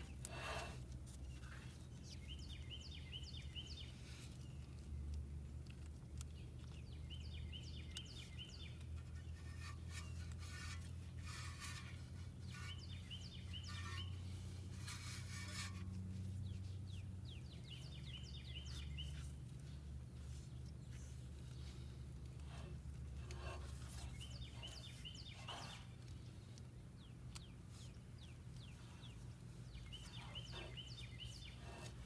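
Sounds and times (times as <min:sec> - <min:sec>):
scraping on brake parts: 0:00.0 - 0:02.4, 0:08.2 - 0:16.5, 0:21.0 - 0:26.0, 0:29.7 - 0:32.0
steady low hum: 0:00.0 - 0:32.0
songbird chirping: 0:01.2 - 0:32.0.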